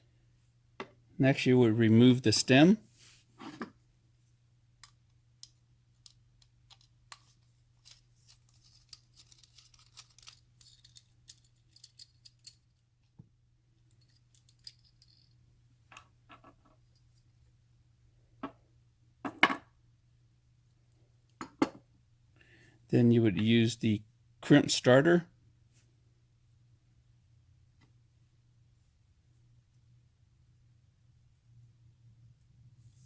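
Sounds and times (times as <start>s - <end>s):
clicks and scrapes of metal parts: 4.8s - 12.6s.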